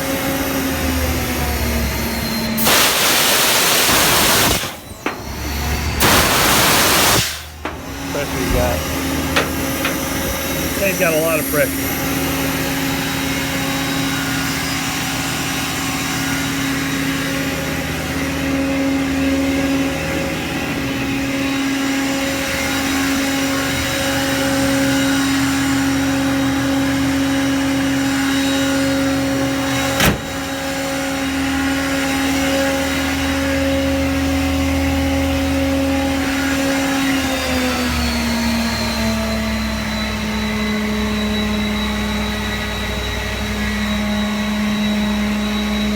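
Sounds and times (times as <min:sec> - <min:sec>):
air compressor hum: 0:00.0 - 0:37.1.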